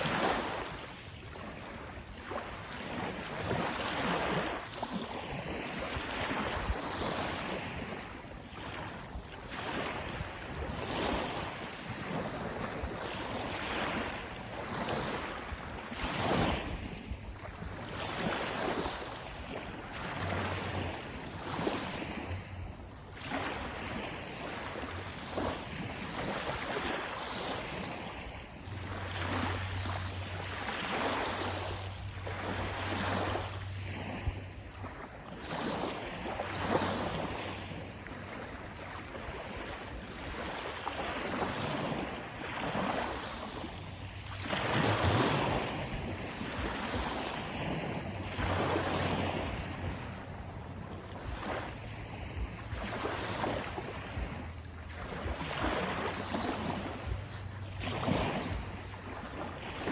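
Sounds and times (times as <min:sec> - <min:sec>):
sea waves breaking: 0:00.0 - 0:59.9.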